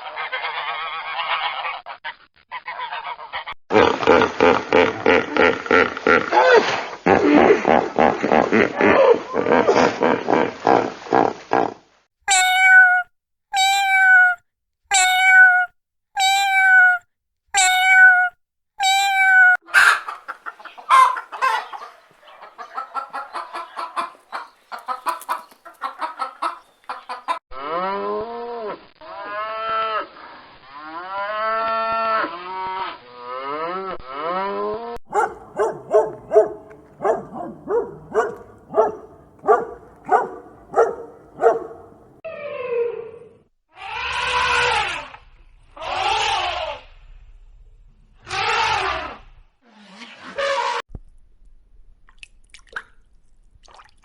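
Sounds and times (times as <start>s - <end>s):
loud animal calls: 17.6s - 25.4s, 35.1s - 42.2s, 43.8s - 45.2s, 45.8s - 46.9s, 48.2s - 50.8s
rapid clucking calls: 19.6s - 27.4s
short barks: 35.1s - 42.2s.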